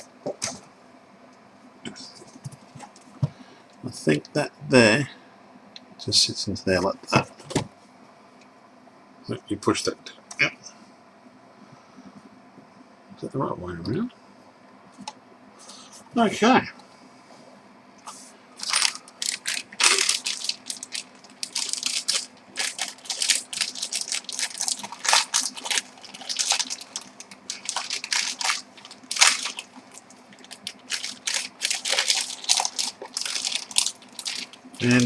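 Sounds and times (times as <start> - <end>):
packaging crinkling and crunching: 18.6 - 35.0.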